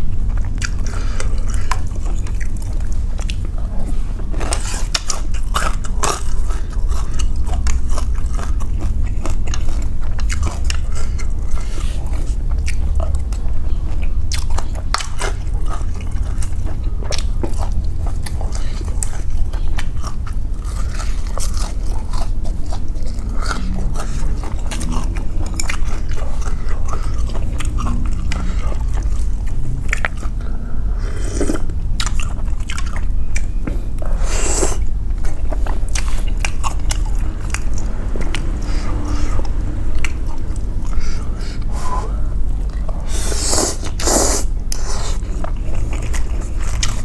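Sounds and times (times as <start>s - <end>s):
chewing with wet mouth clicks: 0.0s - 47.0s
low hum: 0.0s - 47.0s
slurping noodles: 43.0s - 47.0s.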